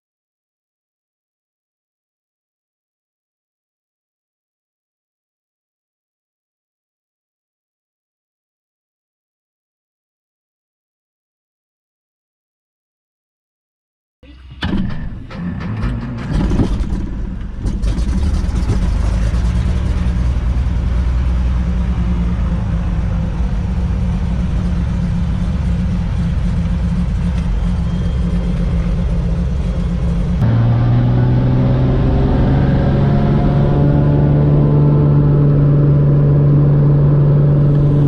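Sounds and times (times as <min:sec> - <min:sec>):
piston aircraft engine running: 0:14.3 - 0:38.0.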